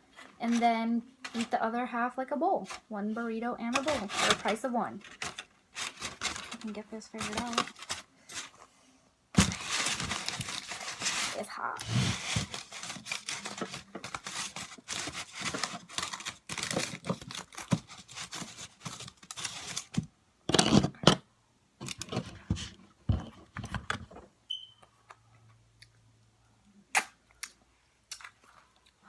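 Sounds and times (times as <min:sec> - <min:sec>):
small handling noises: 0:00.0 - 0:01.7, 0:02.6 - 0:21.2, 0:21.8 - 0:26.7
food wrapper crinkling: 0:03.8 - 0:08.6, 0:09.4 - 0:20.0.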